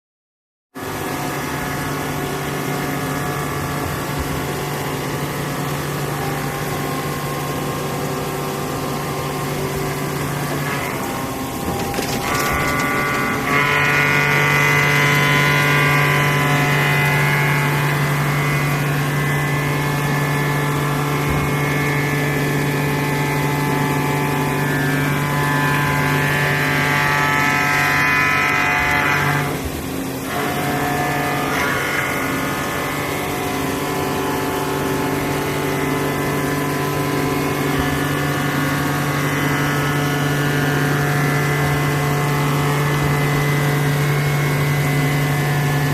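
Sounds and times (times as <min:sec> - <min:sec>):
metal cutting noise: 0:00.8 - 0:21.5, 0:24.8 - 0:45.9
milling machine spindle hum: 0:00.8 - 0:45.9.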